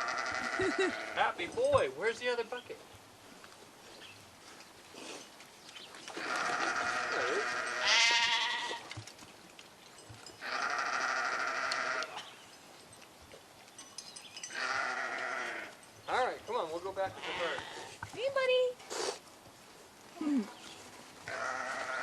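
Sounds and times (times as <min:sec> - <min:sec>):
livestock bleating: 0:00.0 - 0:01.2, 0:06.2 - 0:08.9, 0:10.4 - 0:12.2, 0:14.5 - 0:15.8, 0:17.1 - 0:18.0, 0:21.3 - 0:22.0.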